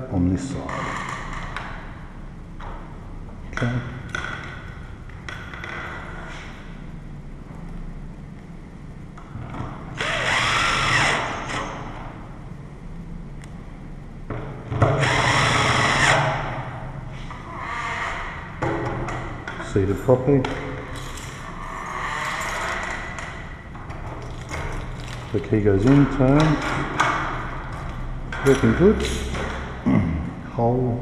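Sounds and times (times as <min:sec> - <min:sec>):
cordless drill driving screws: 0:10.0 - 0:11.6, 0:15.0 - 0:16.2.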